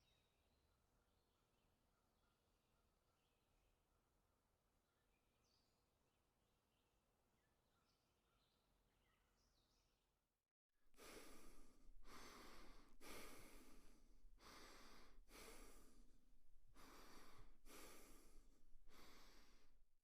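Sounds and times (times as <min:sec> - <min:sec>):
quick noisy breathing: 0:11.0 - 0:19.8.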